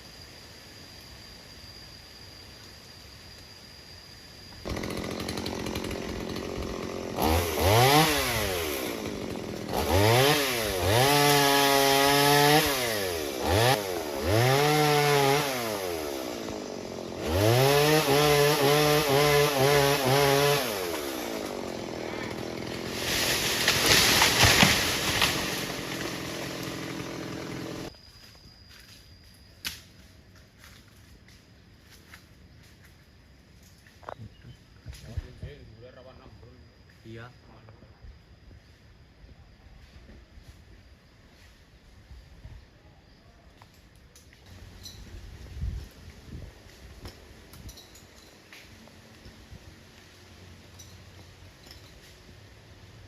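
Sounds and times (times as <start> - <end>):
chainsaw idling and revving: 4.6 - 27.9.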